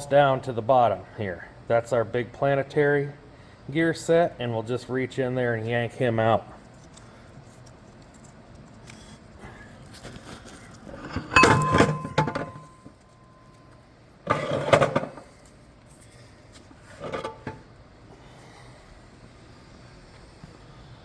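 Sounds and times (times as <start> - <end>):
metal gear parts clanking: 11.1 - 12.8.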